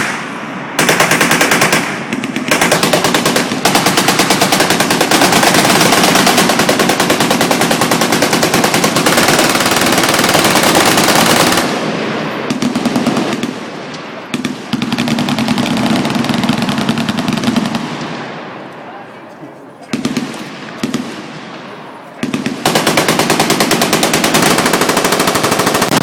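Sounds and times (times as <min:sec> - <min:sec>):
machine guns firing: 0:00.0 - 0:18.3, 0:19.9 - 0:21.6, 0:22.2 - 0:26.0.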